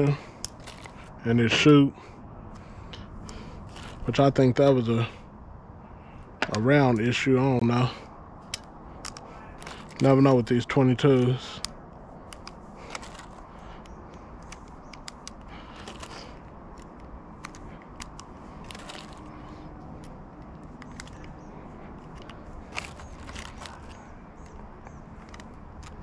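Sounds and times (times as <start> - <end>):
steady outdoor hiss: 0.0 - 26.0
rounds clicking into magazine: 0.4 - 1.1, 8.4 - 10.0, 11.1 - 26.0.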